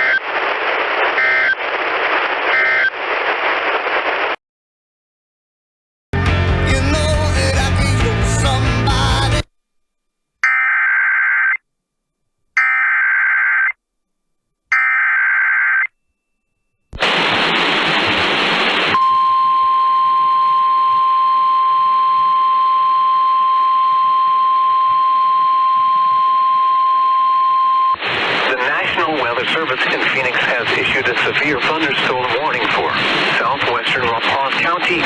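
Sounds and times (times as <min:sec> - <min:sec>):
radio static: 0:00.0 - 0:04.4, 0:17.0 - 0:19.2, 0:28.0 - 0:35.0
steady high alarm tone: 0:12.6 - 0:13.6, 0:14.7 - 0:16.6, 0:19.0 - 0:27.9.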